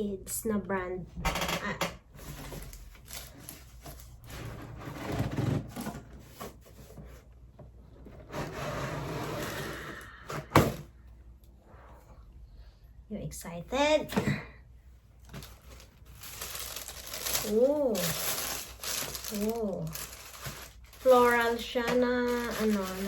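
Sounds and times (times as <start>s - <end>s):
cardboard box rustling and scraping: 2.2s - 7.3s, 8.0s - 9.7s.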